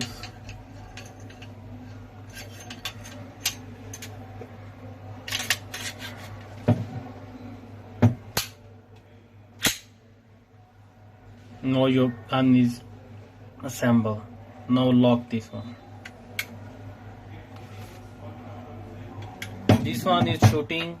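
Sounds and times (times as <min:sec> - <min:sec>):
metal parts rattling: 0:02.2 - 0:04.2.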